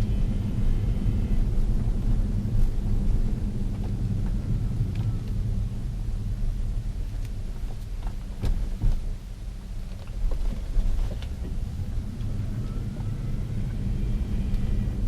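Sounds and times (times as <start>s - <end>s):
faint high whine: 0.0s - 8.0s, 11.4s - 15.0s
electric car drive low rumble: 0.0s - 15.0s.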